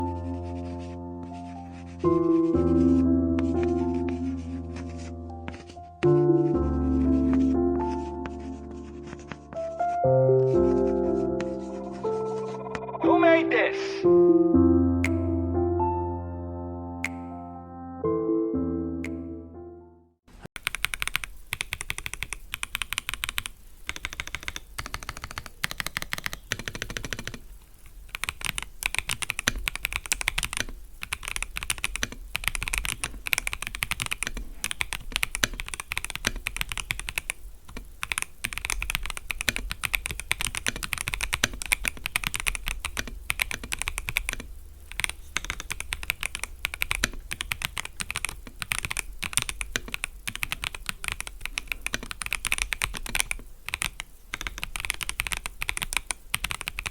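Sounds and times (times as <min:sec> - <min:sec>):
mechanical keyboard typing: 0:02.9 - 0:06.2, 0:20.6 - 0:56.9.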